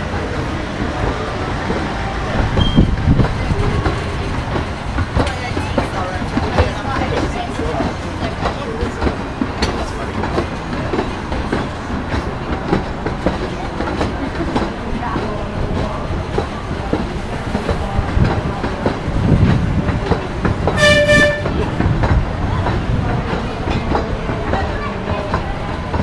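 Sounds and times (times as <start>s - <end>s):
train wheel clatter: 0.0s - 26.0s
train horn: 20.8s - 21.7s.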